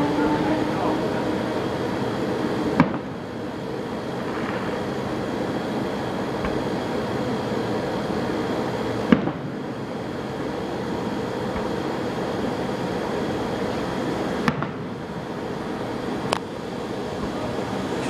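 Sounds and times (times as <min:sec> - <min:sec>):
fireworks bangs: 0:02.7 - 0:03.2, 0:04.2 - 0:04.9, 0:06.4 - 0:06.8, 0:09.0 - 0:09.7, 0:14.4 - 0:15.0.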